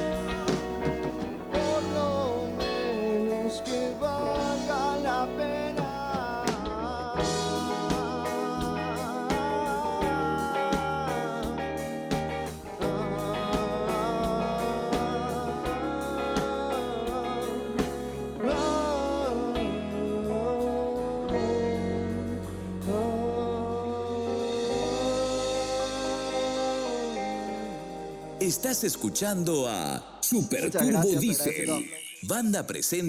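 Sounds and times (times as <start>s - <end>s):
steady drum beat: 0.0s - 19.0s
bass: 0.0s - 31.8s
pitch-bending lead melody: 0.0s - 32.3s.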